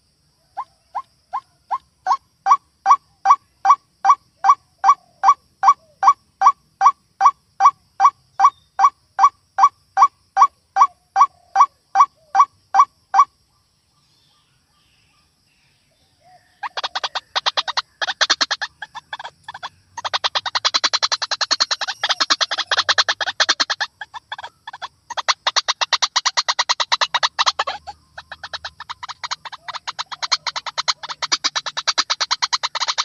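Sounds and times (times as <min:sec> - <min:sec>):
waterhen calling harsh notes: 0:16.6 - 0:33.0.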